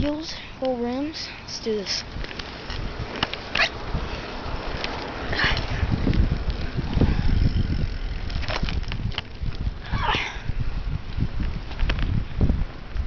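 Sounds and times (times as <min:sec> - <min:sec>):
bicycle rumble: 0:00.0 - 0:13.0
bicycle clicks and knocks: 0:02.1 - 0:03.7, 0:04.6 - 0:09.8, 0:11.1 - 0:12.2.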